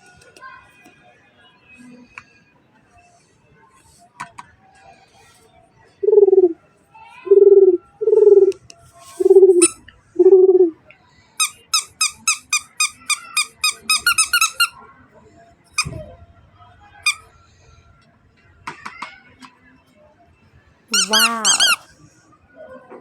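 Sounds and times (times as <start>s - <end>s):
toy high squeaky chirps: 9.6s - 9.8s, 11.4s - 14.7s, 20.9s - 21.8s.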